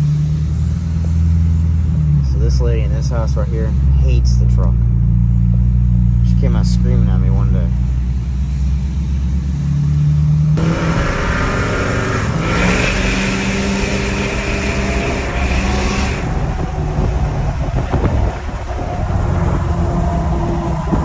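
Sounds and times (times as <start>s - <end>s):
diesel truck accelerating: 0.0s - 21.0s
turbo whistle: 10.6s - 21.0s.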